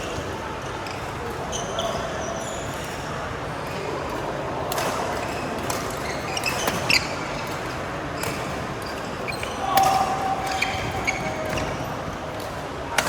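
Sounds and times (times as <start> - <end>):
shoe squeaks: 0.8 - 3.7, 5.2 - 12.0.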